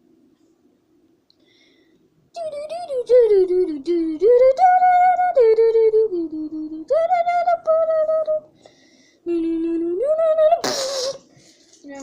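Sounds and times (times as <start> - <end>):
high voice singing wordlessly: 2.3 - 8.6, 9.2 - 11.3.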